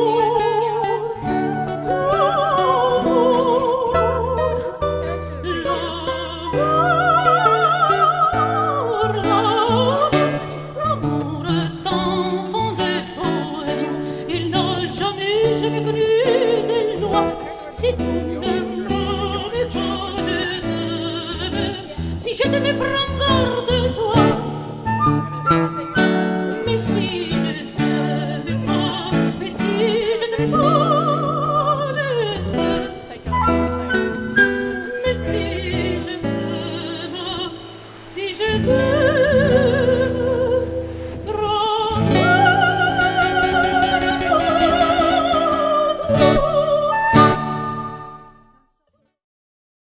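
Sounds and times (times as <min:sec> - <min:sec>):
vibrato melody line: 0:31.7 - 0:36.4.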